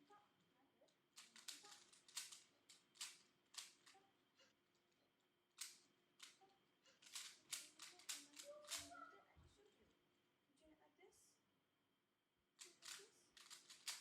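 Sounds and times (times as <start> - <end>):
plastic puzzle cube clicking: 1.2 - 4.1, 5.5 - 8.9, 12.6 - 14.0.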